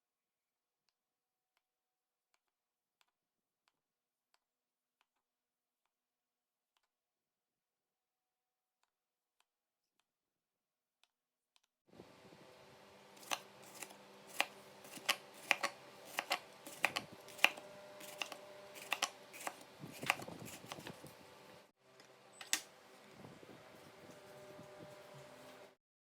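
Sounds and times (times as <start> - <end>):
knife cutting on cutting board: 13.2 - 21.0.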